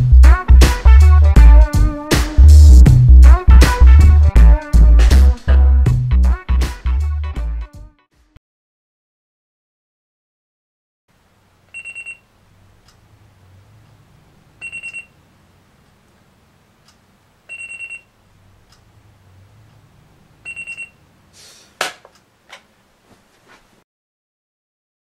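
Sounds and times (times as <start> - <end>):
digital alarm clock beeping: 11.8 - 12.2, 14.6 - 15.1, 17.5 - 18.1, 20.4 - 21.0
rustle: 22.5 - 23.8.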